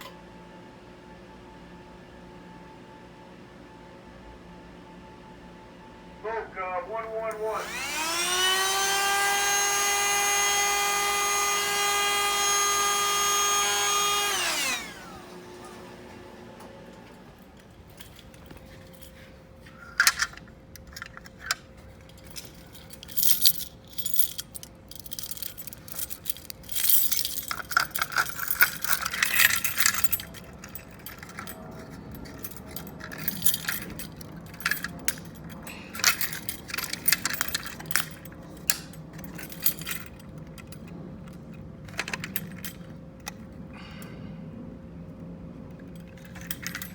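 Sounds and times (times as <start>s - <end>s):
fire alarm siren: 7.2s - 15.4s
clicks and metallic jangling: 17.3s - 43.6s, 45.7s - 46.9s.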